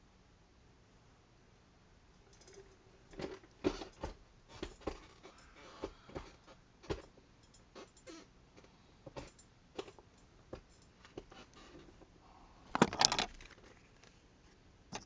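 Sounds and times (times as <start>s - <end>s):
small tools clicking and tapping: 2.3s - 11.9s.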